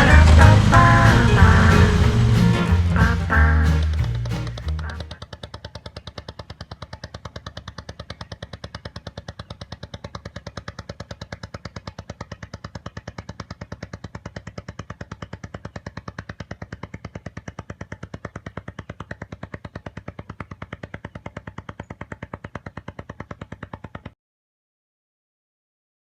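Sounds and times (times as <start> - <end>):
music with rapid pulsing beat: 0.0 - 5.2.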